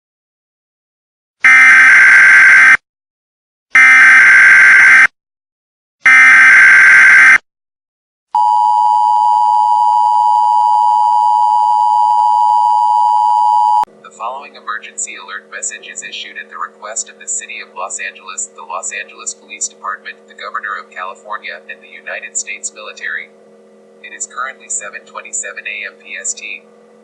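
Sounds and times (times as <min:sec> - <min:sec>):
two-tone attention signal: 0:08.4 - 0:13.8.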